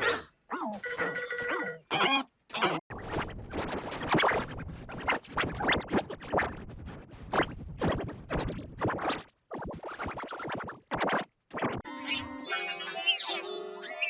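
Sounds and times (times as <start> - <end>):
cartoon music: 0.6 - 2.2, 11.9 - 14.0
chopped scratch-like bursts: 2.9 - 11.8.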